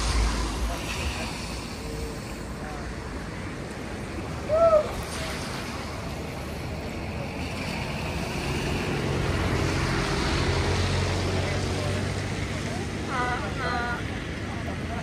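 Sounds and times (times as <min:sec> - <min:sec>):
water noise: 0:00.0 - 0:11.8
wind: 0:00.0 - 0:15.0.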